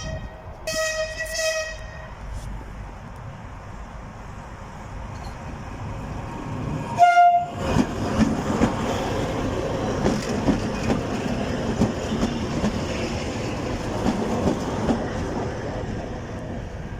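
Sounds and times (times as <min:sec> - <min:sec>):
train horn toot: 0:00.0 - 0:02.2, 0:07.0 - 0:07.6
train wheels clattering: 0:07.6 - 0:15.8.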